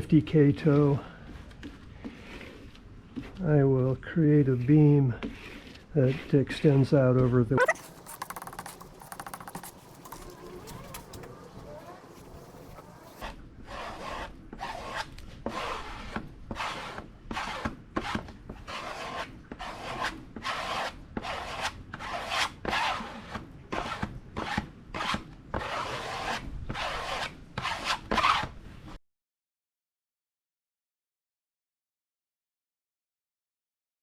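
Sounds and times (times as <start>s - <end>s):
hand sanding rasping strokes: 1.2s - 3.4s, 4.6s - 28.4s.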